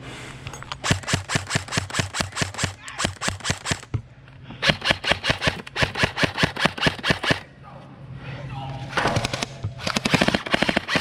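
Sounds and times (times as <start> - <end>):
airsoft rifle rapid shots: 0.8 - 3.9, 4.6 - 7.5, 9.1 - 11.0.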